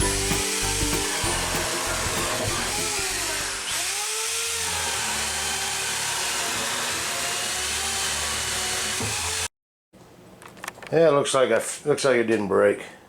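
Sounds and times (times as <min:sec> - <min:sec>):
power tool whirring: 0:00.0 - 0:09.5.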